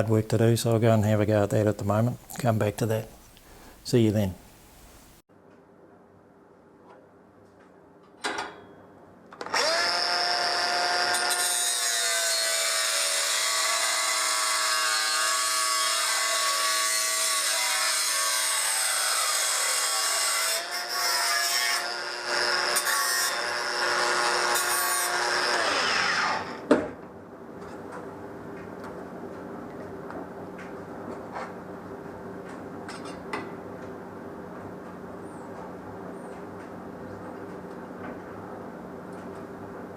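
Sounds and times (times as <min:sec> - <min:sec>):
power tool whining: 0:09.4 - 0:15.5, 0:21.8 - 0:26.7.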